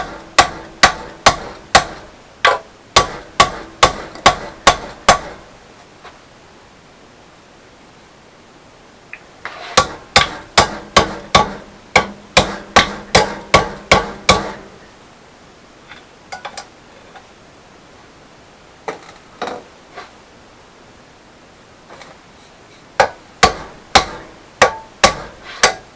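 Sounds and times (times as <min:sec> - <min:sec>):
hammer striking steel rod: 0:00.0 - 0:05.4, 0:09.8 - 0:14.7, 0:23.0 - 0:25.9.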